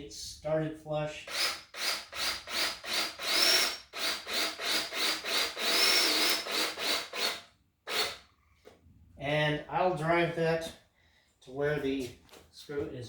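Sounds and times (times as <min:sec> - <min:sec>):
drill driver whining: 0:01.3 - 0:08.3.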